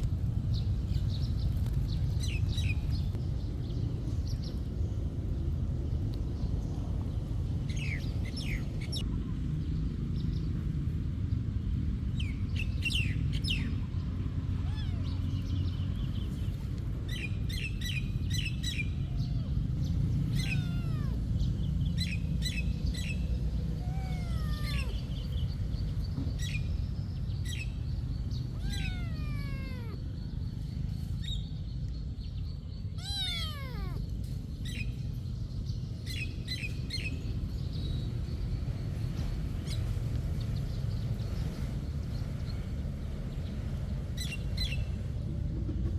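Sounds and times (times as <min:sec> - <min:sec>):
bird chirps: 0:12.4 - 0:31.6, 0:32.6 - 0:34.1
cat meowing: 0:14.4 - 0:15.8, 0:17.8 - 0:25.8, 0:28.4 - 0:30.4, 0:32.9 - 0:34.2.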